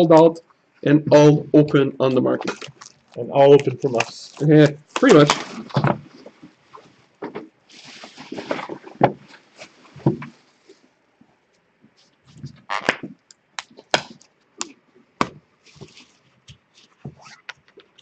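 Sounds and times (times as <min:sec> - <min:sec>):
packaging rustling: 0:02.4 - 0:06.9, 0:07.7 - 0:10.8.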